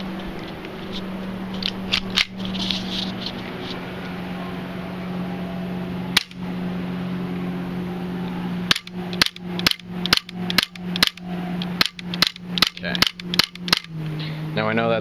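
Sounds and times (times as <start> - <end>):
steady low hum: 0.0 - 15.0
airsoft pistol snaps: 6.2 - 6.4, 8.7 - 13.9.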